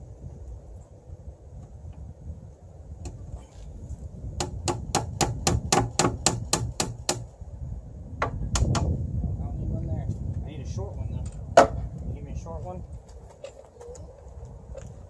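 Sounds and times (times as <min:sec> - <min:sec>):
hammer striking wood: 0:04.4 - 0:07.3, 0:08.2 - 0:08.9, 0:11.6 - 0:11.8.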